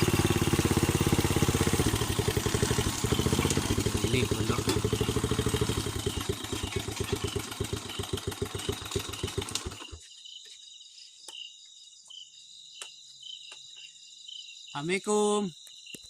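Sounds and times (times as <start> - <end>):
engine idling: 0.0 - 10.0
crickets trilling: 2.4 - 16.0.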